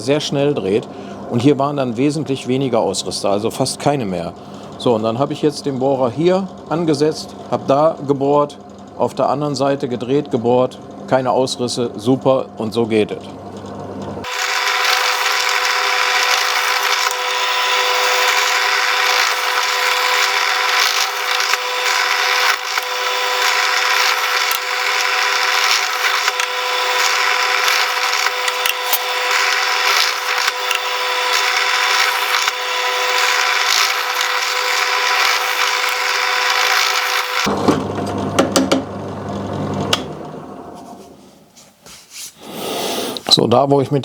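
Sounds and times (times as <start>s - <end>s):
drill bit rasping through wood: 14.2s - 40.1s
electric drill whining: 14.2s - 40.8s.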